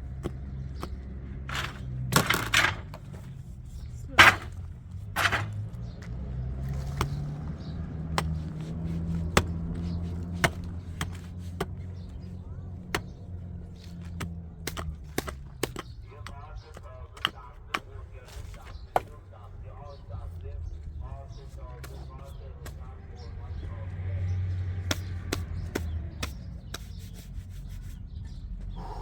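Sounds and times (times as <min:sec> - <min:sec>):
sharp taps of hand tools: 0:00.1 - 0:03.3, 0:06.9 - 0:19.2, 0:21.8 - 0:23.7, 0:24.6 - 0:27.2
tool scraping tile: 0:01.5 - 0:03.0, 0:05.2 - 0:05.6.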